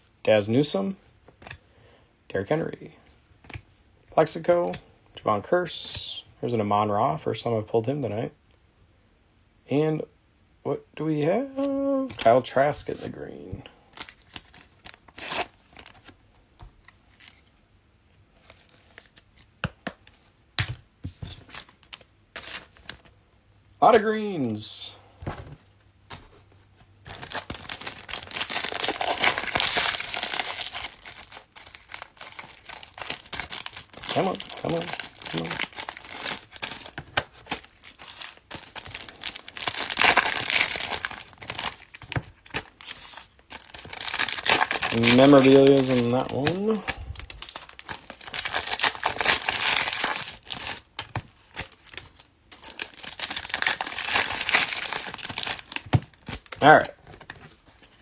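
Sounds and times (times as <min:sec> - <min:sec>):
card pack wrappers crinkling: 0:27.0 - 0:58.0.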